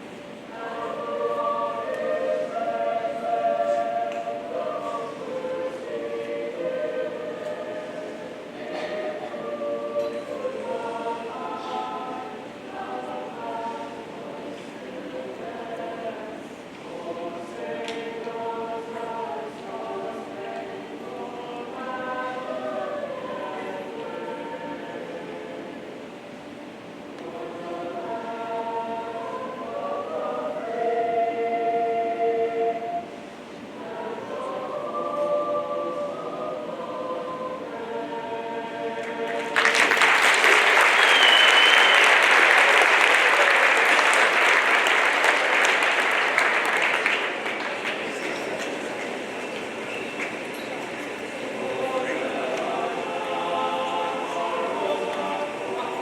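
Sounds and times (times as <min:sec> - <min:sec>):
choir singing sustained chords: 0:00.0 - 0:56.0
audience applause: 0:39.2 - 0:49.1
short whistle: 0:41.0 - 0:42.2.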